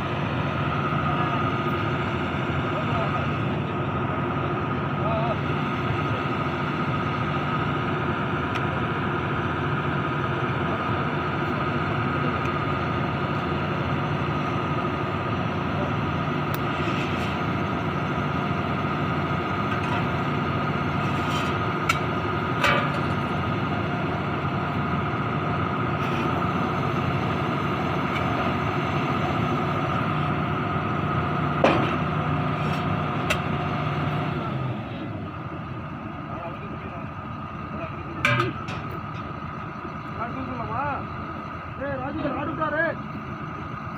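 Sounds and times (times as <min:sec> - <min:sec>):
drilling rig engine hum: 0:00.0 - 0:43.9
sharp metallic knocks: 0:38.2 - 0:39.3.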